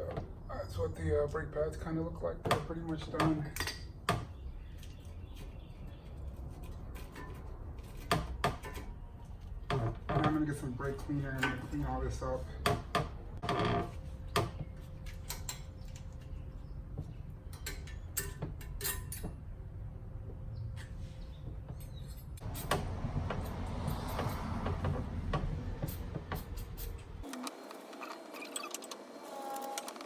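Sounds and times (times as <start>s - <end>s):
metal tools clicking and knocking: 15.0s - 16.4s, 17.4s - 19.4s.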